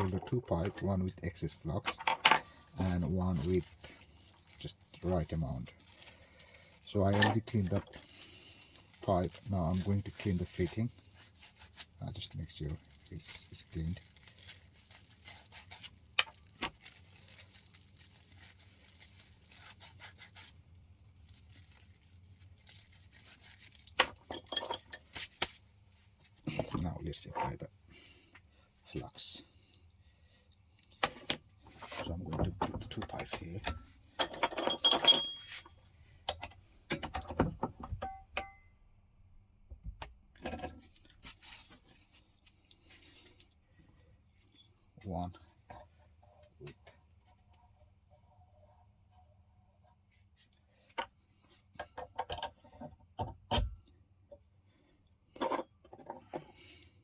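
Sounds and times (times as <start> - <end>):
metal pipes knocking and clinking: 1.8 - 3.0, 7.0 - 7.9, 32.4 - 35.7, 36.3 - 38.7.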